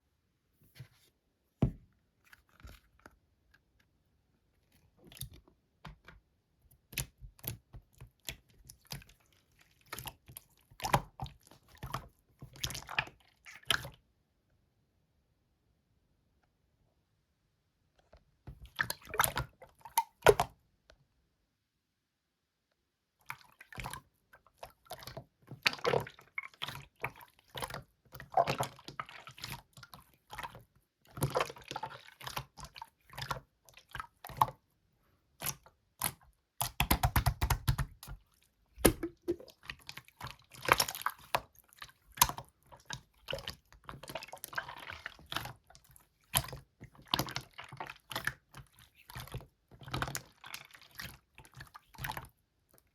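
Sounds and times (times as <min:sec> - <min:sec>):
slime squishing: 0:06.8 - 0:14.0, 0:23.3 - 0:52.9
slime pops and crackles: 0:36.1 - 0:38.2.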